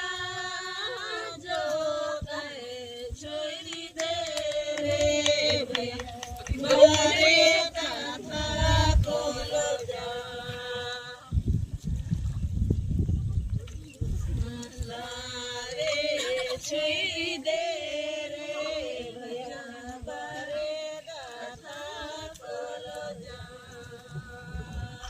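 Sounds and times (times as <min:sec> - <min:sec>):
voices singing chant-like melody: 0:00.0 - 0:11.6, 0:14.0 - 0:25.0
low rumbling noise: 0:04.9 - 0:10.2.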